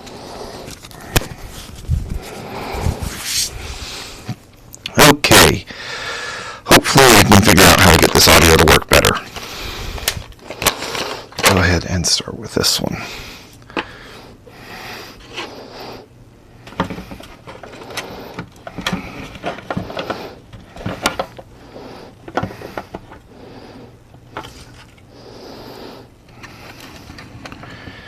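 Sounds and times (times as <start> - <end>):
steady low hum: 0.0 - 28.0
parts clicking and scraping on workbench: 16.7 - 21.5, 24.3 - 25.0.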